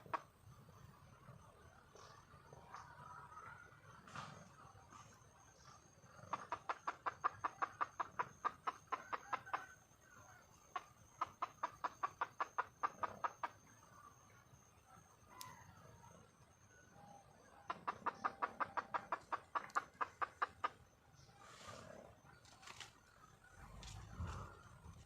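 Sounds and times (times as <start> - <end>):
hen clucking: 6.2 - 13.8, 17.4 - 20.9.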